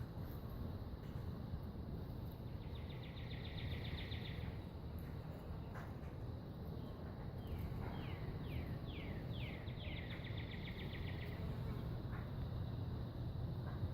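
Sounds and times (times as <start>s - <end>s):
steady low rumble: 0.0s - 13.9s
songbird whistles and trill: 2.6s - 4.6s, 6.8s - 11.5s.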